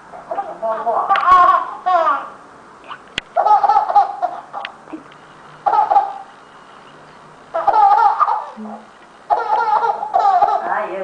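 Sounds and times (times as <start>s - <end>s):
baby laughing: 0.3s - 6.3s, 7.5s - 8.6s, 9.3s - 10.9s.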